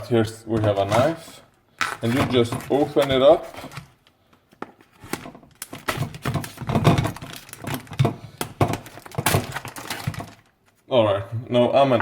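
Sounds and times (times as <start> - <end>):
knife cutting plastic package: 5.0 - 10.5.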